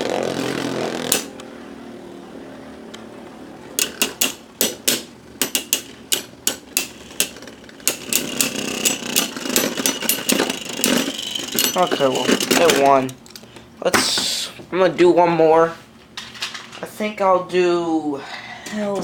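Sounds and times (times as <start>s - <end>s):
sharp rip: 0.0s - 1.4s
faint high whine: 1.4s - 3.6s.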